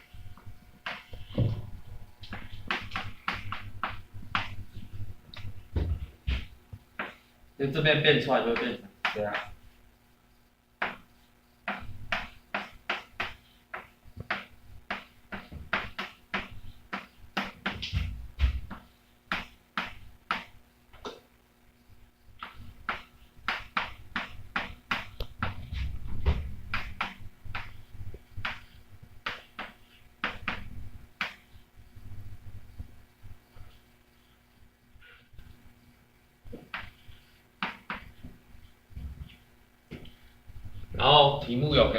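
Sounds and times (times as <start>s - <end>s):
knocks on writing surface: 11.7s - 20.5s, 29.2s - 31.4s.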